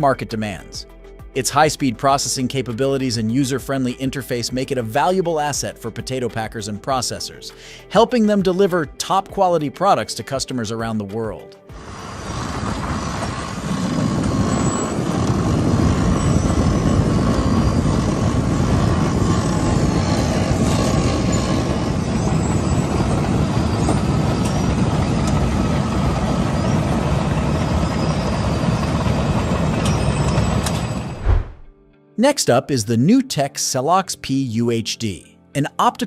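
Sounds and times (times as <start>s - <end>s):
heavy machinery rumbling: 11.7s - 31.7s
faint steady whine: 11.8s - 31.2s.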